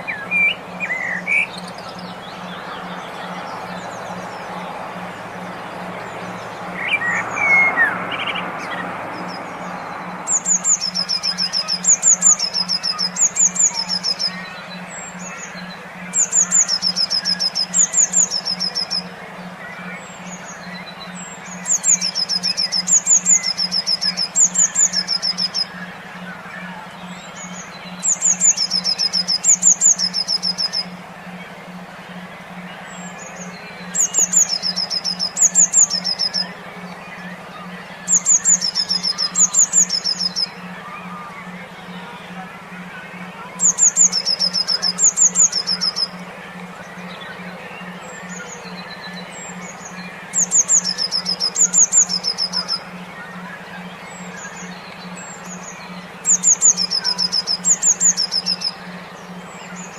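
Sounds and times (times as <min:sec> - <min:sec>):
low pulsing tone: 0:00.0 - 0:59.9
songbird calls: 0:00.0 - 0:59.9.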